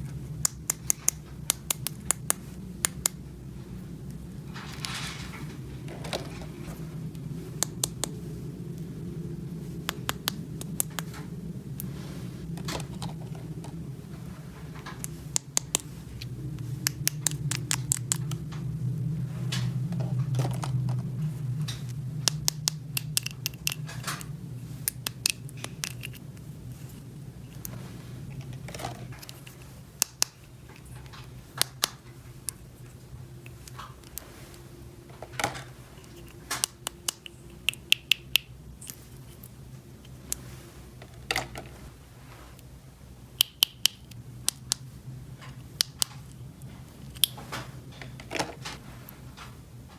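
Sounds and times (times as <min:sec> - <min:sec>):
low hum: 0:00.0 - 0:49.9
plastic toy pieces clicking: 0:16.8 - 0:18.4, 0:22.2 - 0:26.2.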